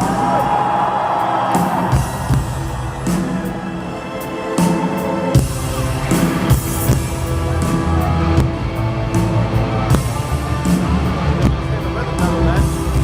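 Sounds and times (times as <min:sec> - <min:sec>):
drum kit: 0:00.0 - 0:13.0
heavy bass: 0:05.4 - 0:13.0.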